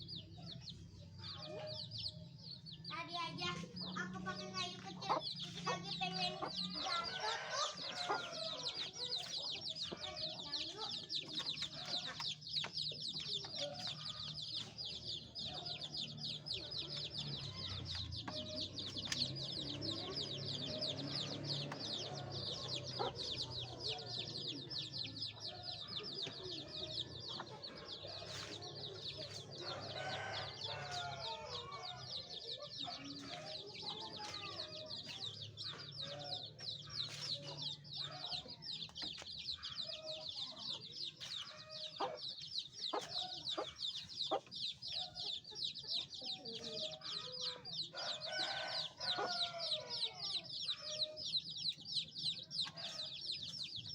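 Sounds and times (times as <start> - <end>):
chicks peeping: 0.0 - 53.9
hen clucking: 41.2 - 47.3.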